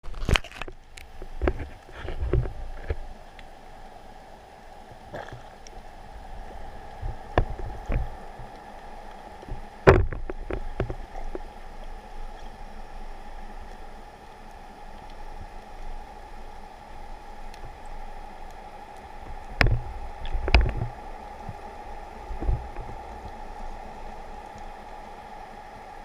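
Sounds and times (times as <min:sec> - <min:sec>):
muffled underwater hum: 0:00.2 - 0:26.0
underwater knocks and thumps: 0:00.6 - 0:03.0, 0:07.0 - 0:08.5, 0:09.4 - 0:11.5, 0:19.3 - 0:21.6, 0:22.4 - 0:23.3.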